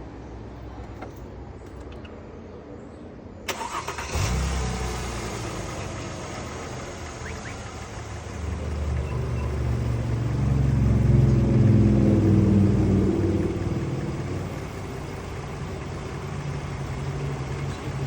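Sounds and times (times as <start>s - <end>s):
car engine idling: 3.5s - 18.0s.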